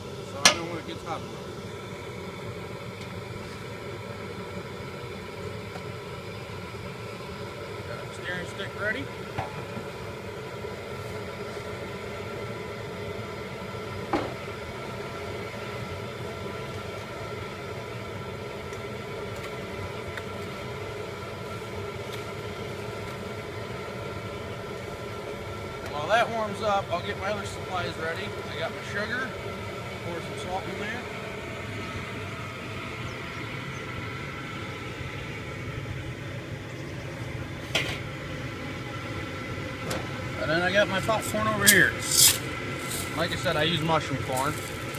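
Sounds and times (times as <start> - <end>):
gas burner rumbling: 0.0 - 44.9.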